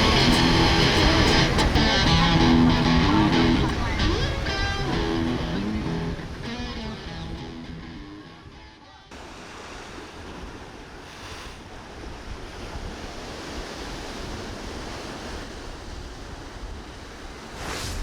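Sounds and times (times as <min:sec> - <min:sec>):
ocean surf washing ashore: 0:00.0 - 0:08.2, 0:09.1 - 0:18.0
wind rumbling on microphone: 0:11.6 - 0:18.0.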